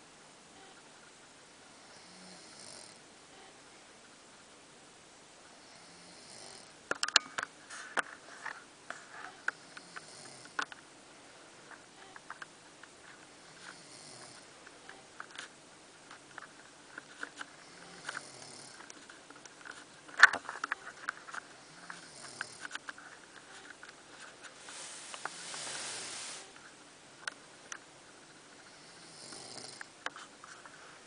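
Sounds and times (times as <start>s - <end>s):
woman snoring: 1.8s - 3.0s, 5.6s - 6.7s, 9.6s - 10.6s, 13.5s - 14.5s, 17.6s - 18.8s, 21.6s - 22.6s, 28.7s - 29.9s.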